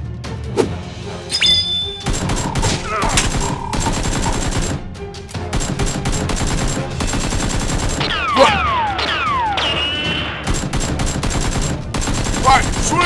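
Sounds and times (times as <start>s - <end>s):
background music: 0.0s - 13.0s
rapid automatic gunfire: 2.0s - 8.6s, 10.2s - 13.0s.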